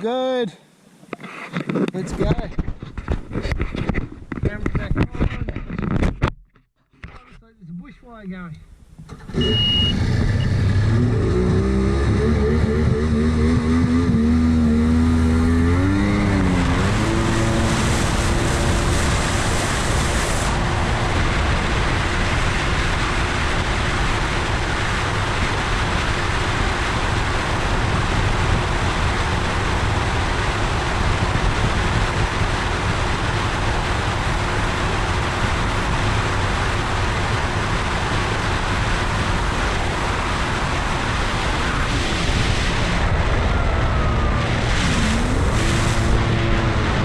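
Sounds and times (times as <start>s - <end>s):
jet ski engine revving: 9.1s - 47.0s
rushing noise at speed: 12.7s - 47.0s.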